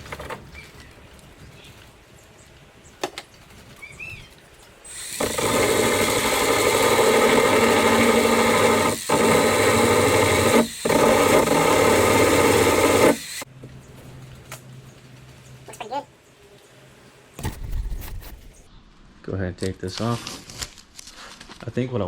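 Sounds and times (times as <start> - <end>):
handheld power tool running: 4.9 - 13.5.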